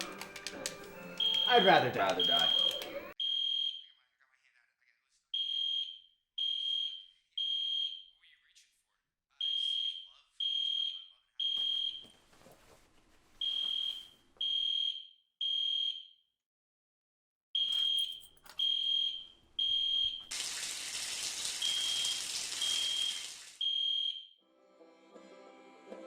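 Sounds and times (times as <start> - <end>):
fire alarm beeping: 1.2 - 3.9, 5.4 - 8.1, 9.4 - 12.2, 13.4 - 16.2, 17.6 - 20.3, 21.5 - 24.4.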